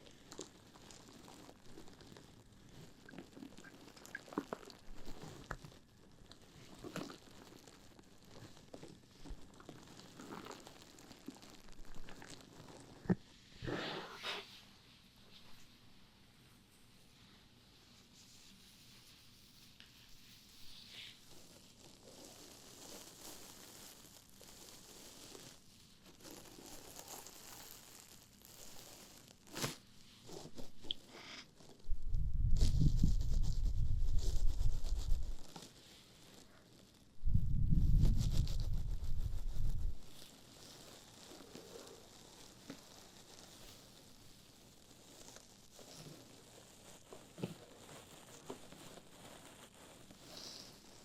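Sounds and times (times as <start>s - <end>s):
bath pouf crinkling: 0.0s - 13.5s, 18.0s - 51.0s
sponge scratching microphone: 30.3s - 36.3s, 37.2s - 43.9s.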